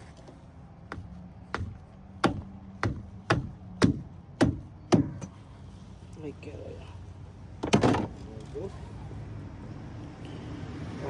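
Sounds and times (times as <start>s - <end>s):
sharp knocks: 0.9s - 5.4s.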